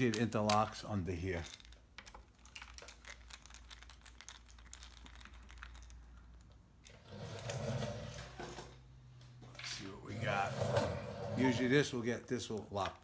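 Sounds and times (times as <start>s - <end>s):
small parts clicking: 0.0s - 6.9s.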